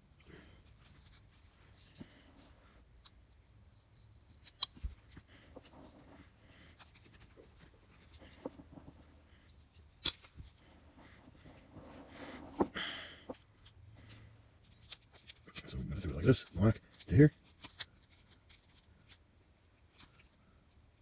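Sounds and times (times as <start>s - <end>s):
wires handling noise: 0.0s - 20.4s.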